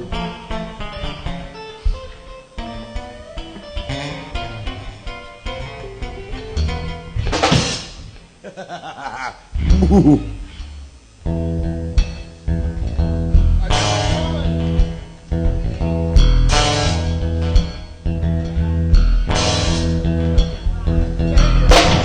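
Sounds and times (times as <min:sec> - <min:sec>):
bass guitar: 0:00.0 - 0:22.0
electric guitar chords: 0:00.0 - 0:22.0
drums and cymbal hits: 0:07.1 - 0:08.4, 0:09.6 - 0:18.2, 0:18.9 - 0:22.0.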